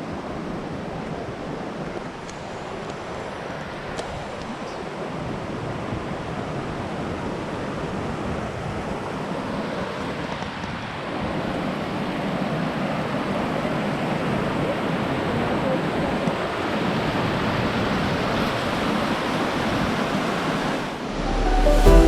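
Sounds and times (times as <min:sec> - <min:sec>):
waterfall rushing: 0:20.7 - 0:22.0.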